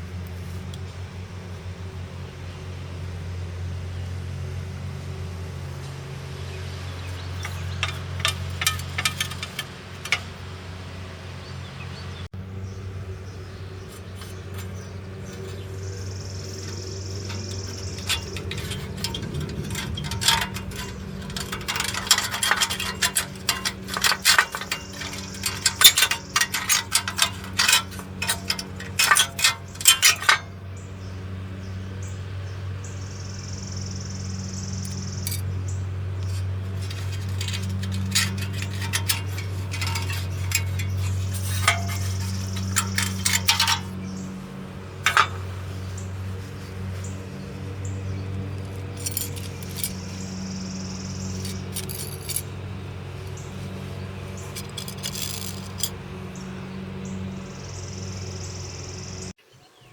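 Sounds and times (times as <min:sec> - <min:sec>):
metallic clinking and rattling: 0:07.0 - 0:10.7, 0:13.7 - 0:31.0, 0:34.8 - 0:57.7.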